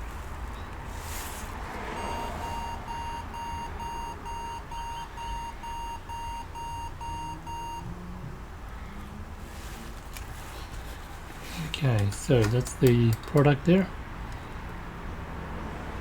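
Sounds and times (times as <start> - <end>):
high-pitched electronic beeps: 2.0 - 7.8.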